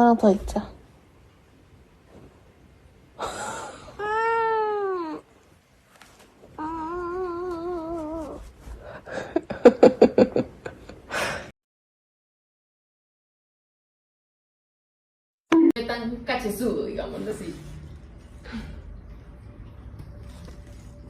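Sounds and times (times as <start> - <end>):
cat meowing: 6.6 - 8.4.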